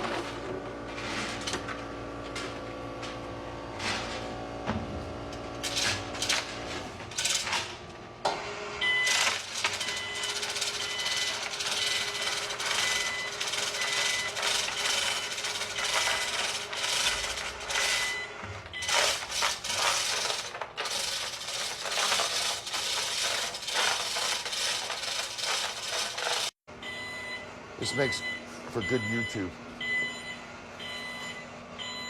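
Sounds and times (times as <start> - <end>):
engine-room machinery noise: 0.0 - 32.0
rattling and clanking: 9.2 - 26.5.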